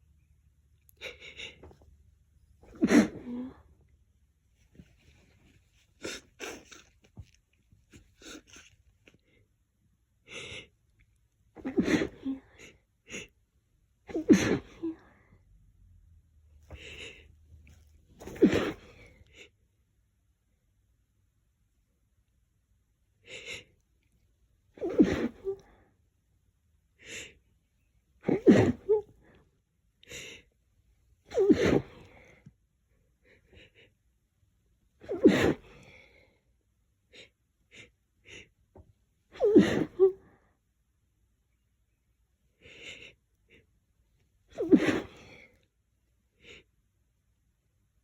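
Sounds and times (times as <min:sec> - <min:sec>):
woman sneezing: 0:02.7 - 0:03.6, 0:11.6 - 0:12.4, 0:14.1 - 0:15.0, 0:18.2 - 0:19.0, 0:24.8 - 0:25.6, 0:28.2 - 0:29.1, 0:31.3 - 0:32.1, 0:35.0 - 0:35.8, 0:39.4 - 0:40.2, 0:44.6 - 0:45.4.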